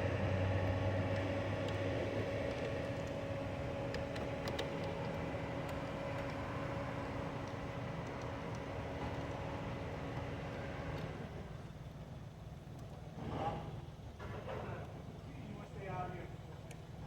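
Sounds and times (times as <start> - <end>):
steady mechanical hum: 0.0 - 17.0.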